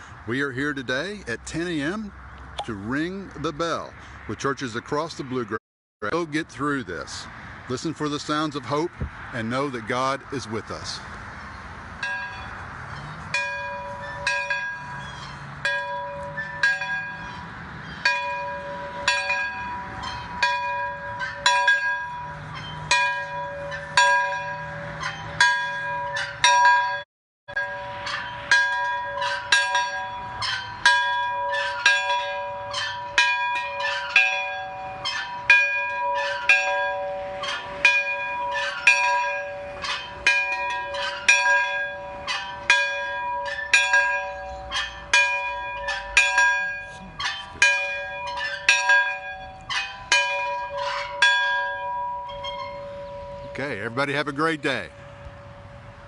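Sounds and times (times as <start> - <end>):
church bell ringing: 12.0 - 12.5, 13.3 - 17.4, 18.0 - 56.0.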